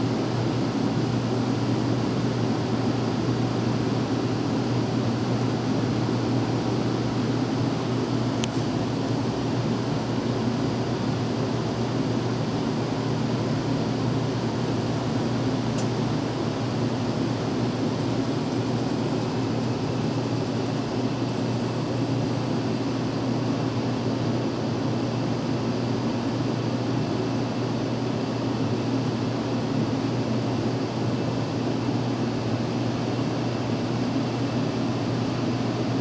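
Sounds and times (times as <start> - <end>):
furnace blower air rush: 0.0 - 22.7.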